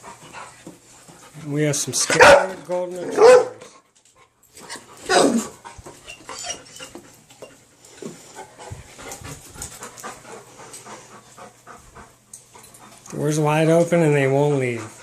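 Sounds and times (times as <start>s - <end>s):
dog panting: 0.0s - 15.0s
dog yelping: 2.1s - 2.5s, 3.1s - 3.6s, 4.7s - 7.0s.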